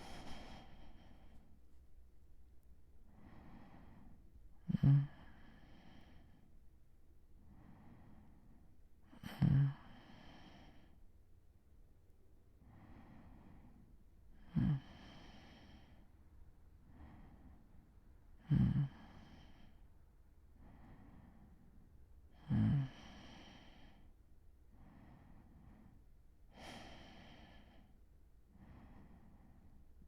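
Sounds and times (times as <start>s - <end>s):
soft breaths: 0.0s - 2.0s, 3.0s - 6.7s, 7.4s - 11.1s, 12.5s - 30.0s
man snoring: 4.7s - 5.9s, 9.2s - 10.5s, 14.5s - 15.4s, 18.5s - 19.4s, 22.4s - 23.6s.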